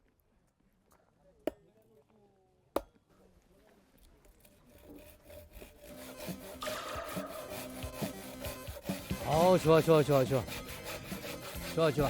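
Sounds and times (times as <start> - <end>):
hand saw cutting wood: 4.0 - 12.0.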